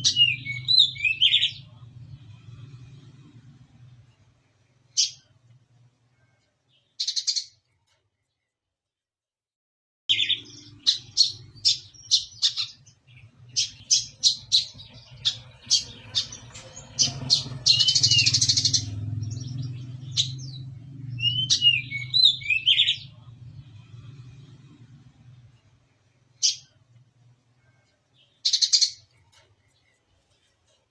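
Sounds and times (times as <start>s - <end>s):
steady low hum: 1.4s - 6.4s, 21.8s - 28.1s.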